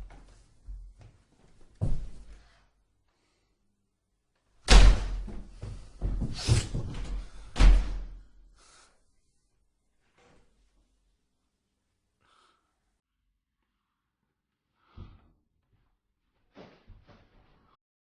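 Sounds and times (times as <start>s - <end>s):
door slamming and banging: 4.7s - 8.2s.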